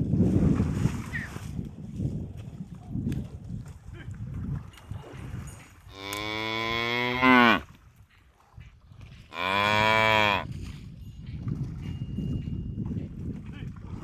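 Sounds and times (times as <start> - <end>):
cow mooing: 5.9 - 7.6, 9.3 - 10.5.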